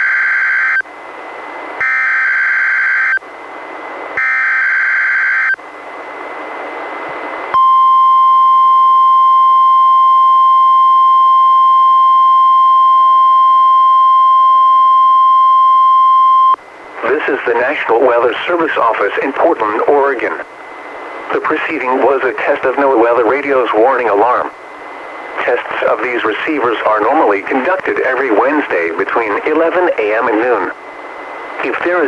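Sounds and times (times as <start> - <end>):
steady warning alarm tone: 0.0 - 3.3, 4.2 - 5.8, 7.5 - 16.8
radio hiss: 16.2 - 32.0.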